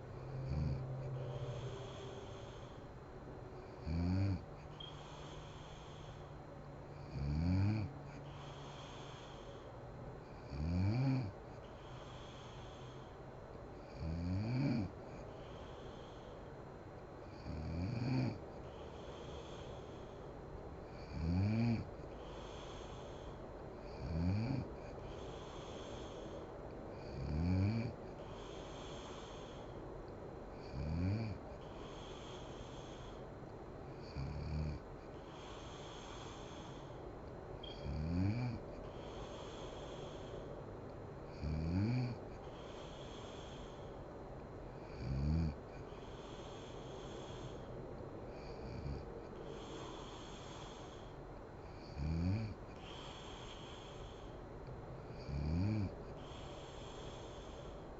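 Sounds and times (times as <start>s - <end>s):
woman snoring: 0.0s - 2.8s, 3.6s - 6.2s, 6.9s - 9.5s, 10.3s - 13.0s, 13.9s - 16.3s, 17.3s - 20.0s, 20.9s - 26.3s, 27.0s - 29.7s, 30.6s - 33.2s, 34.0s - 37.0s, 37.6s - 40.3s, 41.3s - 43.9s, 44.8s - 47.7s, 48.3s - 51.1s, 51.7s - 54.3s, 55.1s - 57.8s
steady hiss: 0.0s - 7.0s, 11.5s - 27.2s, 27.8s - 57.9s.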